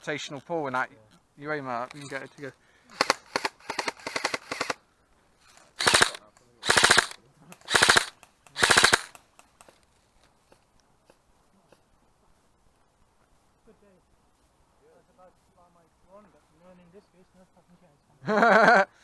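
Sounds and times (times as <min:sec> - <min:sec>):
airsoft rifle automatic bursts: 0:03.0 - 0:04.8, 0:05.8 - 0:09.2.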